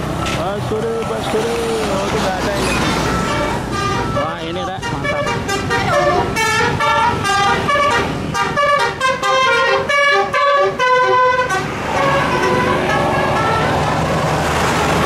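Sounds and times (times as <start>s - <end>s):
bus engine: 0.0s - 15.0s
traffic noise: 0.0s - 15.0s
bus musical horn tune: 3.0s - 14.2s.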